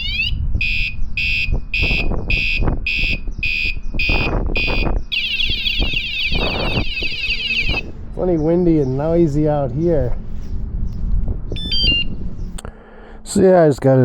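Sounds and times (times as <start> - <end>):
motorcycle alarm siren: 0.0 - 7.9, 11.6 - 12.1
wind rumble on microphone: 0.0 - 14.0.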